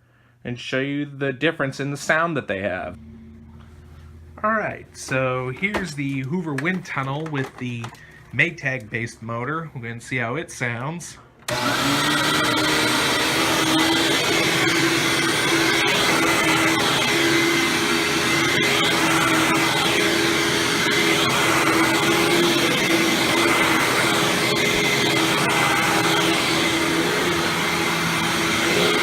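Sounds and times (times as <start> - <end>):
vacuum cleaner motor running: 11.5 - 29.0.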